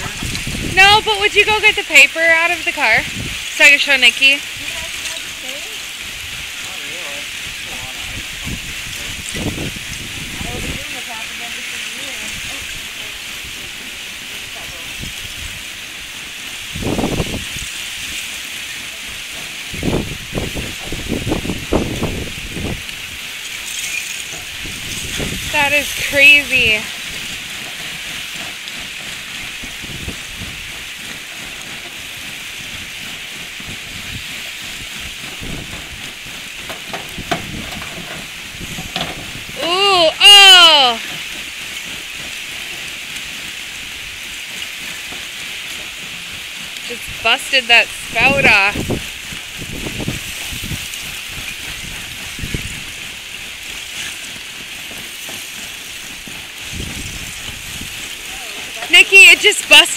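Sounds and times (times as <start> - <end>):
lake ice grinding and crackling: 0.0 - 59.9
steady hiss: 0.0 - 59.9
low ice knocks: 35.4 - 39.4.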